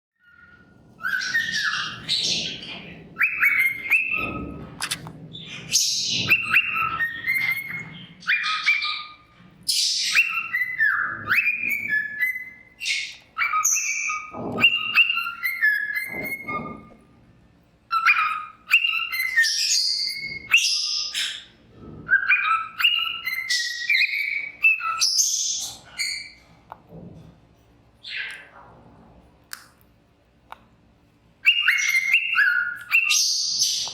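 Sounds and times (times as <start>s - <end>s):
cockatiel whistling and chattering: 0.2s - 17.0s, 17.9s - 21.5s, 22.1s - 26.4s, 31.4s - 33.9s.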